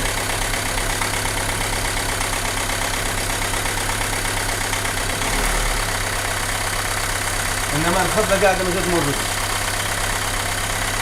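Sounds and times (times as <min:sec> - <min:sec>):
car engine idling roughly: 0:00.0 - 0:11.0.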